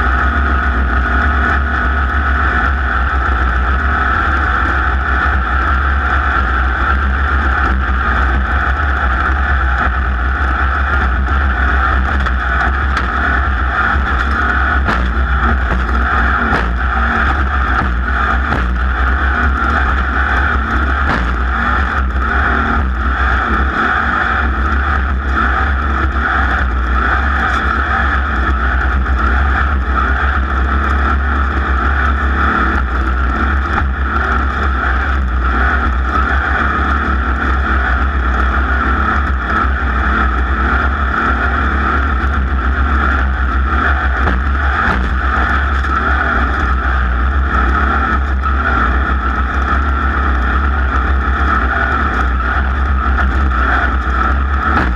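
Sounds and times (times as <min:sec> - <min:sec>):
racing engine at high revs: 0:00.0 - 0:54.9.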